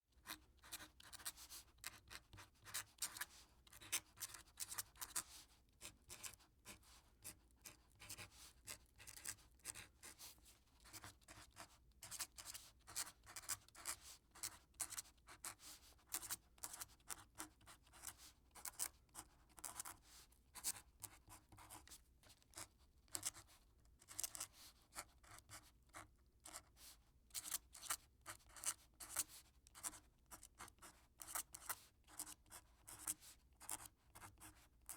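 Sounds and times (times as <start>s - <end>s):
pen nib scratching on paper: 0.2s - 10.2s, 10.8s - 20.0s, 27.4s - 34.9s.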